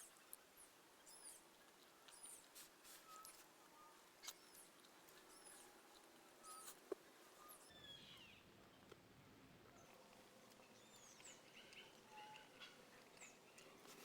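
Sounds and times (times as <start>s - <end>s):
small bird chirping: 0.0s - 5.8s, 7.4s - 8.4s.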